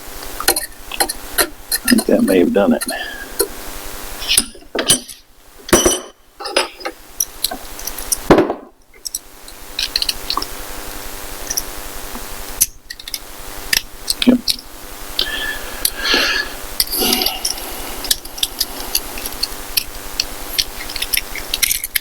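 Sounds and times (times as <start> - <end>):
metallic clinks and knocks: 4.4 - 7.0.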